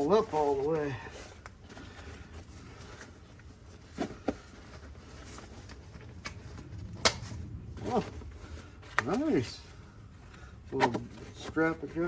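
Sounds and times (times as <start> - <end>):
tool bag rustling: 0.0 - 6.7.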